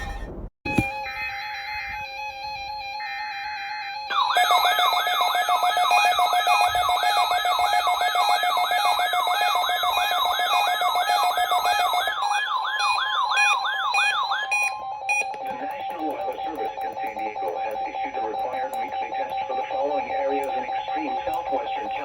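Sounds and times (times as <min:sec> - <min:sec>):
electronic siren yelping: 0:00.0 - 0:16.2.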